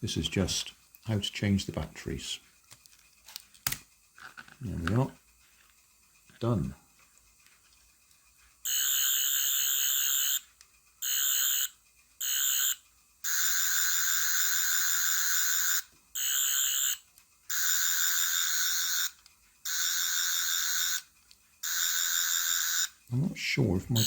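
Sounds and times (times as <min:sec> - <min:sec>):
toy electronic pulsing warble: 0:08.6 - 0:23.1.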